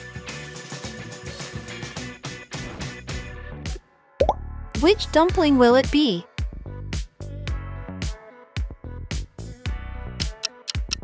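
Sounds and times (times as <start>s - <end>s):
background music with drum beat: 0.0s - 11.0s
bass line: 4.2s - 5.8s, 6.5s - 8.0s.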